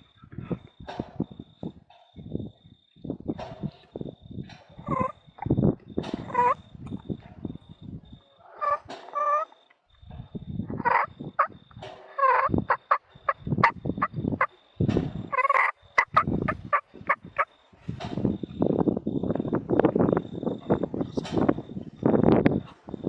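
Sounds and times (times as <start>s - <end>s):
turkeys gobbling: 4.8s - 5.2s, 6.1s - 6.6s, 8.4s - 9.6s, 10.7s - 14.6s, 15.3s - 17.5s.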